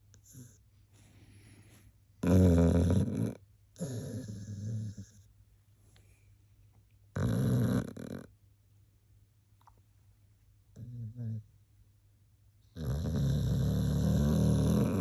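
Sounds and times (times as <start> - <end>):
dog snoring: 2.2 - 5.2, 7.1 - 8.3, 10.8 - 11.4, 12.7 - 15.0.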